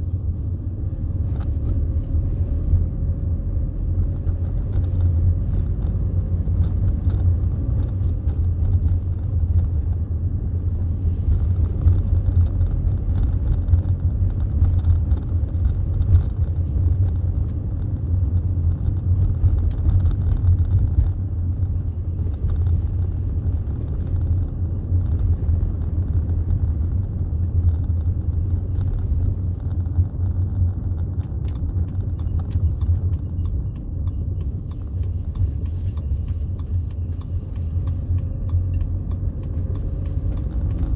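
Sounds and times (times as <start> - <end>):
car engine running: 0.0 - 40.9
road noise: 0.0 - 40.9.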